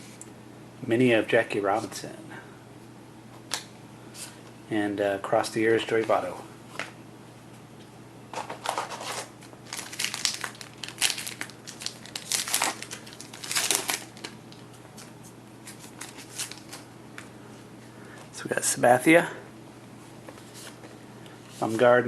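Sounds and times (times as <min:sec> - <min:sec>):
card pack wrapper crinkling and tearing: 0:08.7 - 0:14.7, 0:15.6 - 0:16.9.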